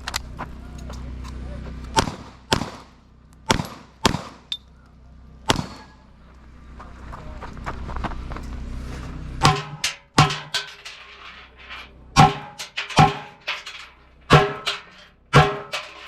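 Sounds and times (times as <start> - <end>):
rapid pistol shots: 2.0 - 4.5, 5.5 - 5.9.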